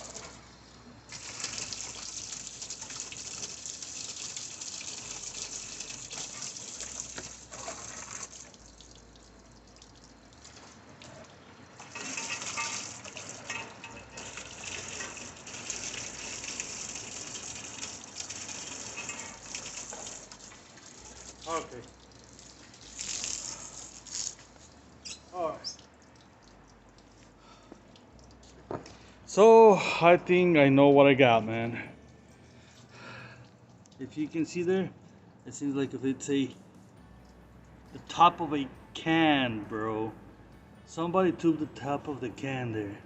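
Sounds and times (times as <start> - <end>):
water gushing into toilet: 0.0 - 24.4.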